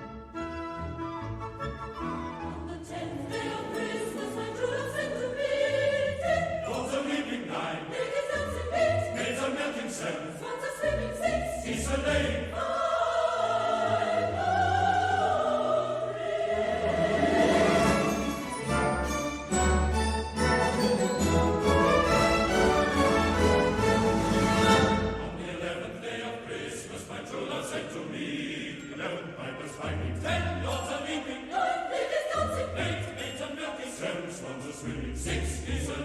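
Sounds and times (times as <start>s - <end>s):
orchestral accompaniment: 0.0s - 5.6s, 16.7s - 26.2s
choir singing operatic style: 2.1s - 36.0s.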